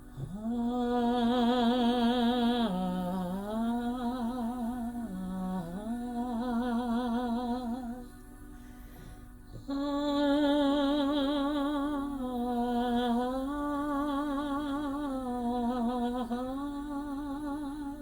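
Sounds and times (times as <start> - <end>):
woman toning a sustained note: 0.0 - 18.0.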